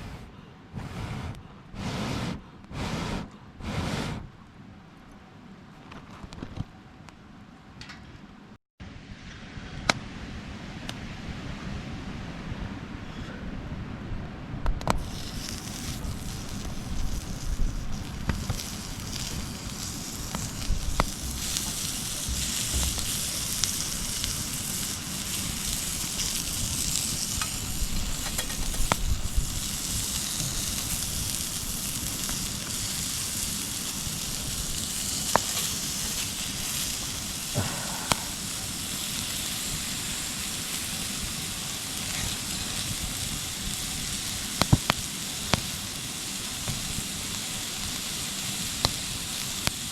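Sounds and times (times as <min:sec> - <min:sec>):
fire popping: 0:14.7 - 0:49.9
meat sizzling over fire: 0:14.9 - 0:49.9.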